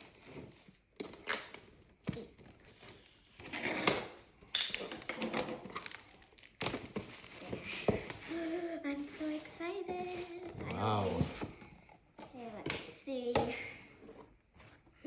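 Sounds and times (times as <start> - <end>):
packaging rustling: 4.6 - 8.6.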